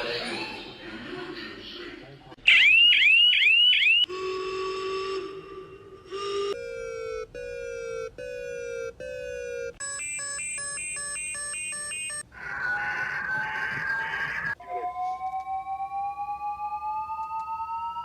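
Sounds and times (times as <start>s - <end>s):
buzzy two-tone alarm: 2.5s - 5.2s, 6.1s - 12.3s
high tone with pulsing beeps: 6.5s - 14.9s.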